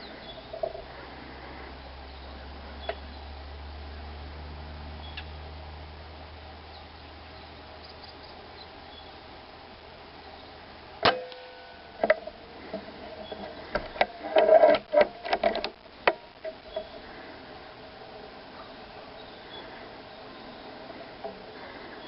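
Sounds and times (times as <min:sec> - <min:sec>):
rifle clicks and metallic rattles: 0:13.4 - 0:16.6.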